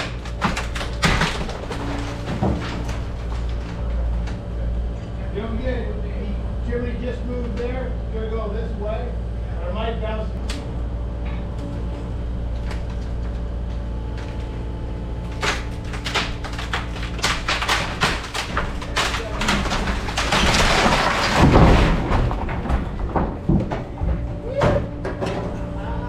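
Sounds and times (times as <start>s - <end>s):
falling debris knocks: 0.0s - 4.6s, 12.4s - 26.0s
cracks of breaking structure: 0.0s - 5.2s, 12.3s - 26.0s
house collapsing with rumble: 0.0s - 9.4s, 10.4s - 26.0s
machine engine running: 0.0s - 26.0s.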